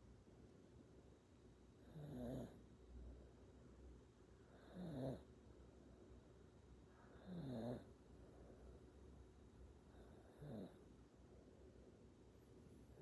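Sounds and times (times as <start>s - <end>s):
baby snoring softly: 1.8s - 2.6s.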